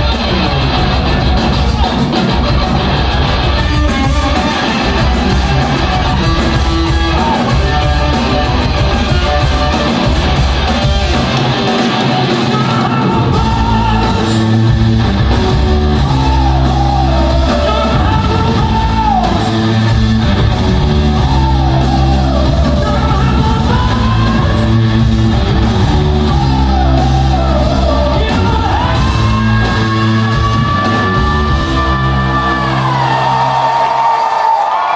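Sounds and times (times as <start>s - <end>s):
rock band playing live: 0.0s - 34.9s
singer wailing: 25.8s - 34.9s.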